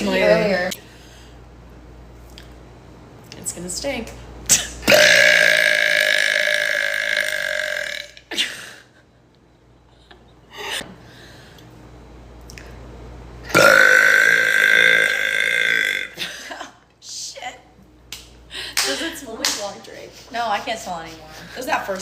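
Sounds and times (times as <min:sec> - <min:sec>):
woman burping: 0:04.5 - 0:08.8, 0:13.5 - 0:16.6.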